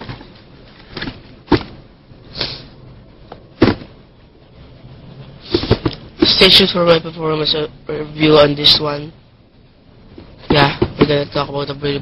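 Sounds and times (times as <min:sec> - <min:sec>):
sharp thumps: 0:00.9 - 0:01.9, 0:03.3 - 0:04.0.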